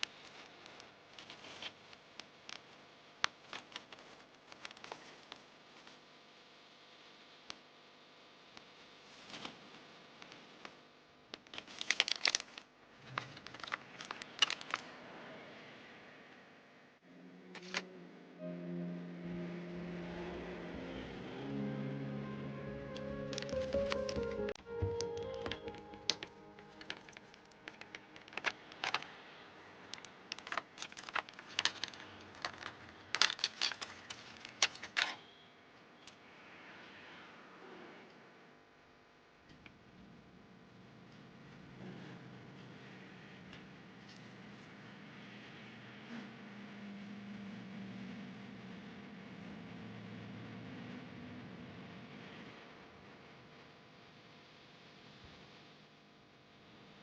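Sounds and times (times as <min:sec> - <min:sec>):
packaging crinkling and crackling: 0:11.4 - 0:15.0, 0:25.4 - 0:29.2, 0:29.8 - 0:35.2.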